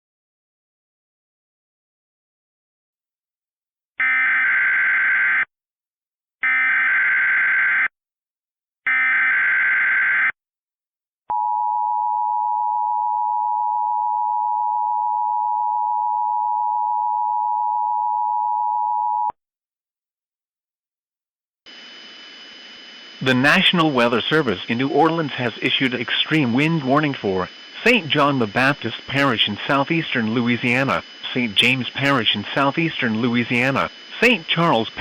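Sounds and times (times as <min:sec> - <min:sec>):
digital data bursts: 0:21.7 - 0:35.0.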